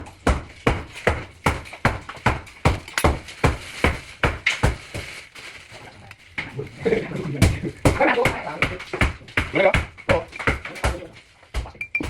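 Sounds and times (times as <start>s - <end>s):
hammer knocking on wood: 0.0s - 5.0s, 7.4s - 12.0s.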